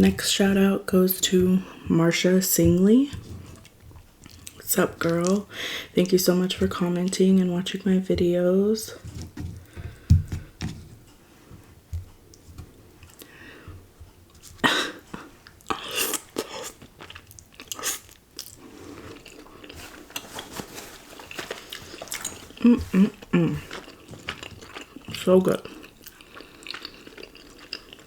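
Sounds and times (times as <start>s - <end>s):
wet chewing: 2.6s - 7.5s, 14.3s - 28.0s.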